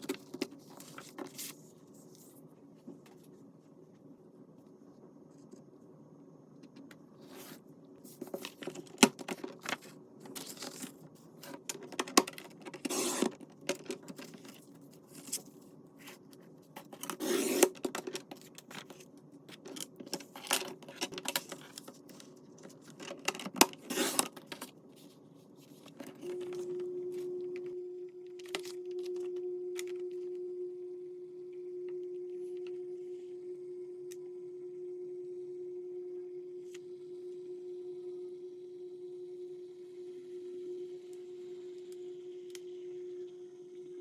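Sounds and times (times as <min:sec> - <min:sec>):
steady hum: 0:00.0 - 0:44.0
paper rustling and tearing: 0:22.7 - 0:24.7.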